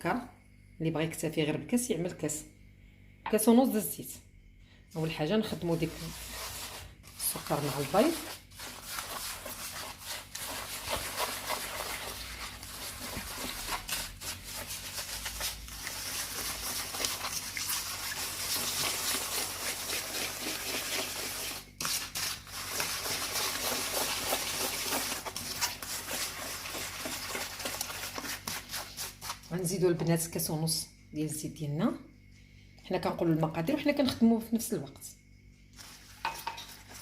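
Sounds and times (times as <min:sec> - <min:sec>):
whisk scraping a bowl: 0:05.5 - 0:29.6, 0:35.8 - 0:37.0.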